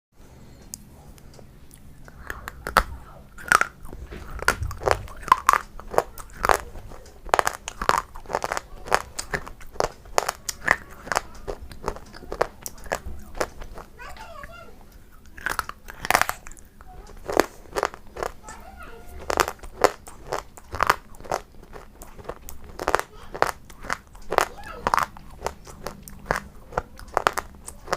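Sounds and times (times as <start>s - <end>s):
crunchy chewing: 0.3s - 27.9s.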